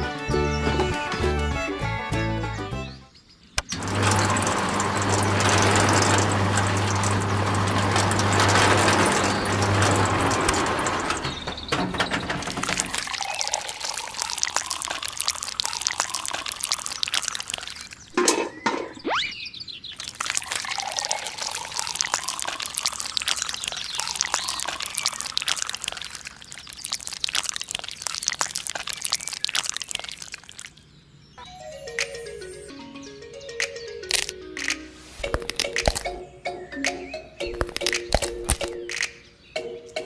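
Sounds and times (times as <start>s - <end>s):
wet mix pouring and splashing: 12.4s - 18.2s, 19.9s - 30.8s, 34.1s - 34.3s, 35.1s - 36.2s, 37.5s - 38.8s.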